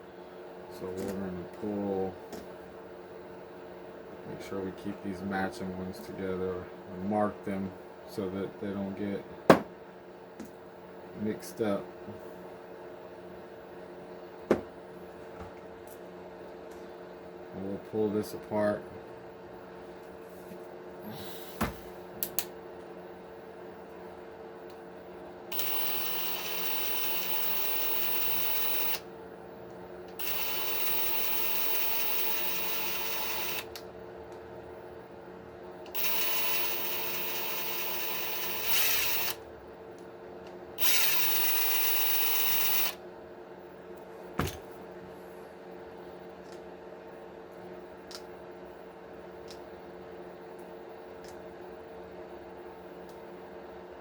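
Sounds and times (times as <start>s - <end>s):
handheld power driver running: 25.5s - 29.0s, 30.1s - 33.7s, 35.9s - 39.4s, 40.8s - 43.0s.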